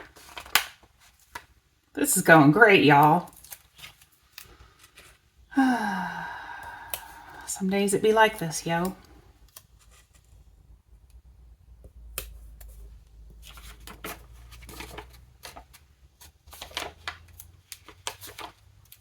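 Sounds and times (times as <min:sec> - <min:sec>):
paper rustling: 0:00.0 - 0:01.6, 0:03.3 - 0:05.2, 0:09.5 - 0:10.4, 0:12.2 - 0:19.0.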